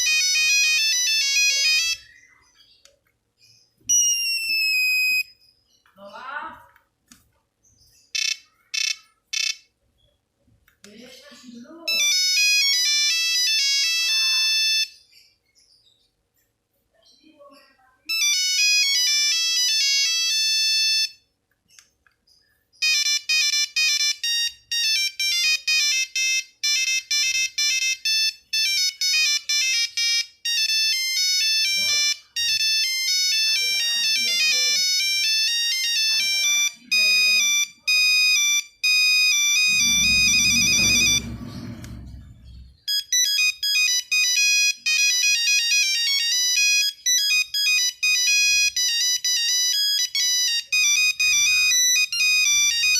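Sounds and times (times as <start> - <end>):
monophonic ringtone melodies: 0.0 - 2.8, 3.4 - 5.5, 11.8 - 15.2, 18.0 - 21.3, 22.8 - 52.9
low buzz: 39.6 - 42.8.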